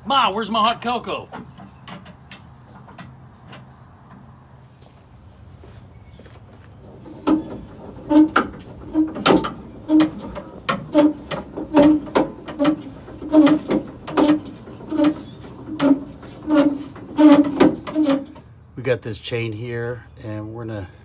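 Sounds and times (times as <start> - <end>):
spare tire hoist creaking and clicking: 0.4 - 4.4, 6.8 - 18.5.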